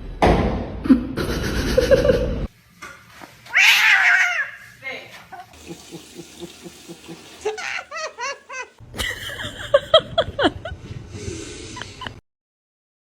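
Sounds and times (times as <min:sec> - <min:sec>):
person laughing: 0:01.2 - 0:02.5, 0:05.6 - 0:10.8.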